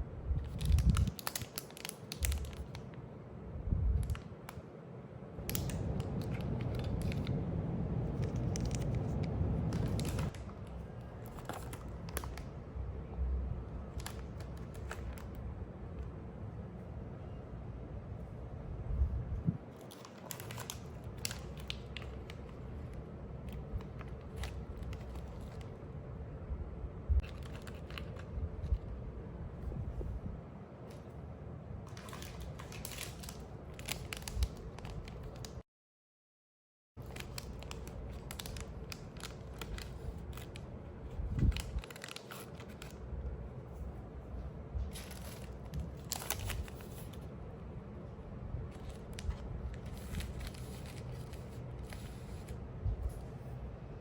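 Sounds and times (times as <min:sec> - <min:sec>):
packaging crinkling: 0:00.4 - 0:02.8, 0:05.4 - 0:07.4, 0:08.0 - 0:12.6, 0:13.8 - 0:15.4, 0:19.8 - 0:25.8, 0:27.2 - 0:28.9, 0:31.9 - 0:35.6, 0:37.0 - 0:43.1, 0:44.8 - 0:47.3, 0:48.6 - 0:53.3.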